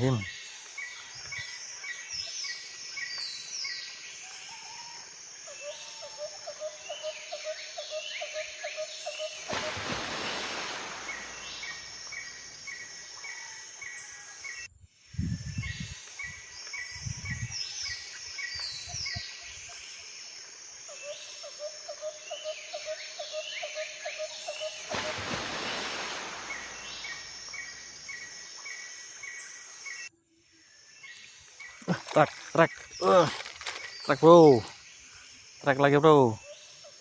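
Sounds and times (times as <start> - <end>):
insects calling: 0.0 - 37.0
birds calling: 5.6 - 14.1, 22.0 - 30.1, 31.0 - 37.0
hissing noise rushes: 9.5 - 11.9, 24.9 - 27.6.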